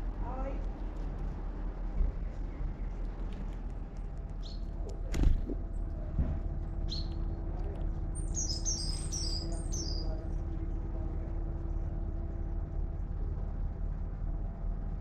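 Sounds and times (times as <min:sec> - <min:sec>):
small songbird chirping: 0:04.4 - 0:04.7, 0:06.9 - 0:07.2, 0:08.2 - 0:10.2.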